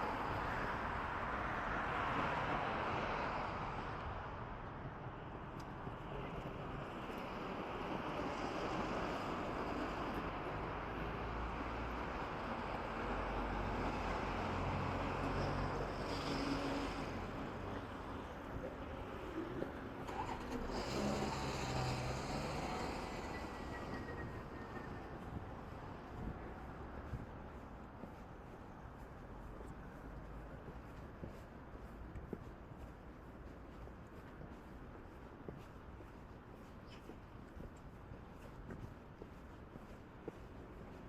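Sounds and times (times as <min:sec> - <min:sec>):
traffic noise: 0:00.0 - 0:41.0
vehicle engine hum passing: 0:05.6 - 0:31.9.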